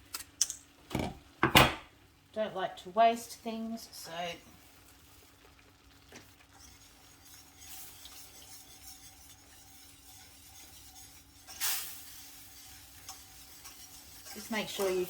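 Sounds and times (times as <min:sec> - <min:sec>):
light sizzle from pan: 0:00.0 - 0:15.0
utensil clicking against pan: 0:00.1 - 0:00.6, 0:13.0 - 0:15.0
utensil scraping in a saucepan: 0:04.0 - 0:15.0.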